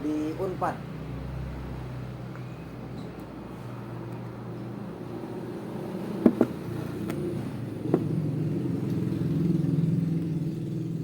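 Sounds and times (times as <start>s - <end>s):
vehicle engine running: 0.0s - 11.0s
sharp knocks: 6.2s - 6.6s.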